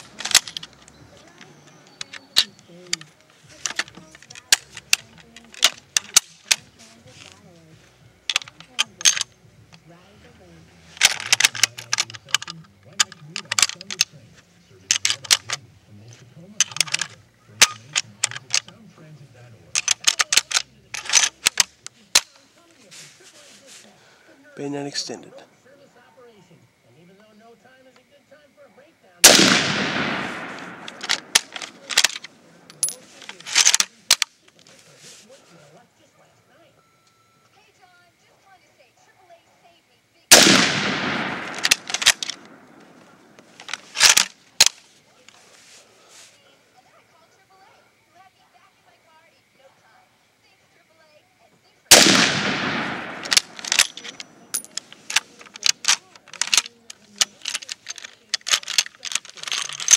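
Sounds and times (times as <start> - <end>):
rifle bolt clacking: 0.0 - 6.7, 8.3 - 9.3, 11.0 - 14.1, 14.9 - 15.6, 16.6 - 18.7, 19.7 - 22.4, 29.2 - 34.3, 40.3 - 44.8, 51.9 - 59.9
rifle shot echoing: 29.2 - 32.9, 40.3 - 43.4, 51.9 - 54.8.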